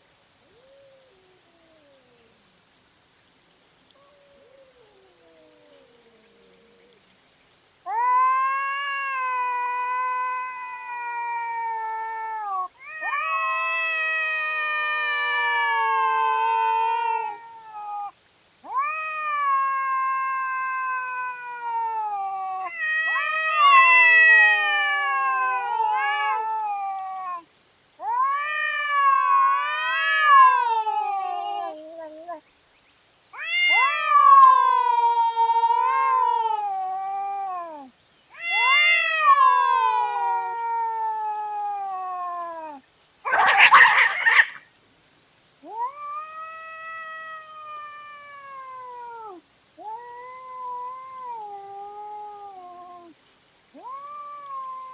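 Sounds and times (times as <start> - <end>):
cats yowling: 0.5 - 2.5, 3.9 - 7.0, 7.8 - 32.4, 33.4 - 44.6, 45.6 - 54.9
cat hissing: 7.9 - 32.4, 33.4 - 44.7.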